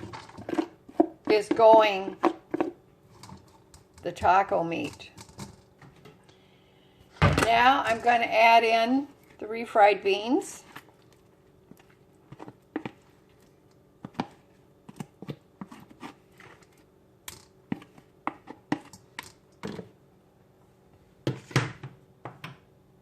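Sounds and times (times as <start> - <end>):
utensil scraping and knocking bowl: 0.0 - 5.5, 11.7 - 13.1, 17.7 - 19.0.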